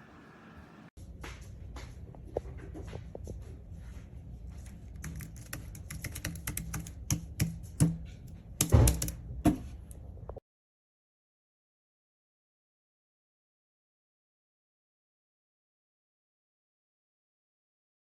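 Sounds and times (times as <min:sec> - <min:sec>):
keypad keys tapping: 0:04.9 - 0:08.0, 0:08.6 - 0:09.2.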